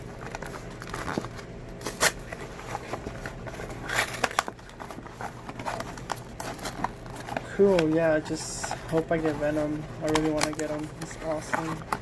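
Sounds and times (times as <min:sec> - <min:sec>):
cardboard packaging tearing and crinkling: 0:00.0 - 0:12.0
packaging clicks and snaps: 0:03.8 - 0:12.0.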